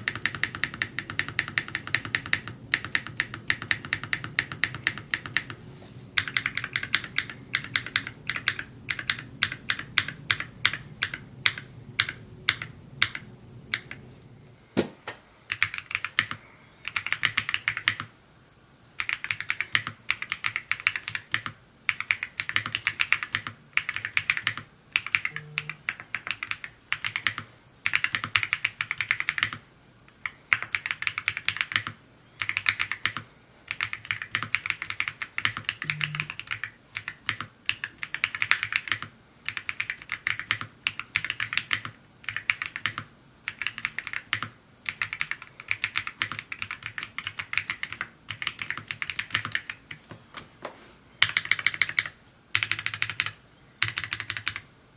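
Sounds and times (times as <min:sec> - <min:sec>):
mechanical keyboard typing: 0:00.0 - 0:05.6, 0:06.2 - 0:14.0, 0:15.5 - 0:18.1, 0:19.0 - 0:50.0, 0:51.2 - 0:54.7.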